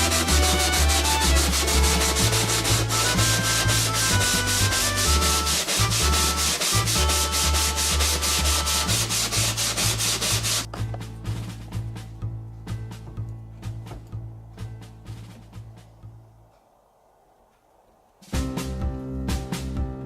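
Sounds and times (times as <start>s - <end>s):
hand sanding back and forth: 0.0s - 10.7s
background music: 0.0s - 16.4s, 18.4s - 20.0s.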